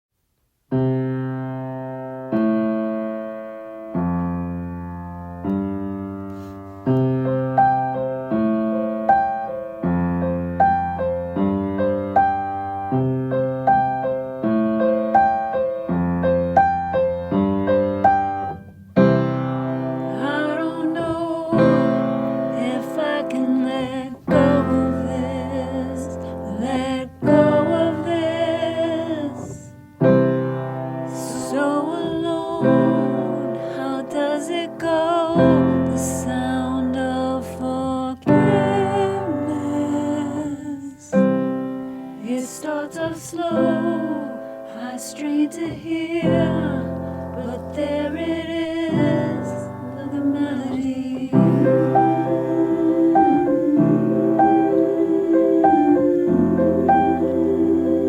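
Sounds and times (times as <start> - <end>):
piano chords and melody: 0.7 - 58.0
sustained wavering lines: 42.2 - 58.0.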